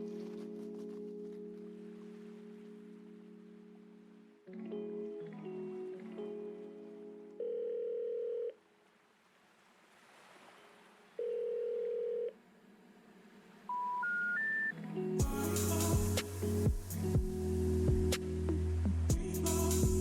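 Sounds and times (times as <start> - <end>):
long electronic beeps: 13.7 - 14.7
short rising beeps: 13.7 - 14.7.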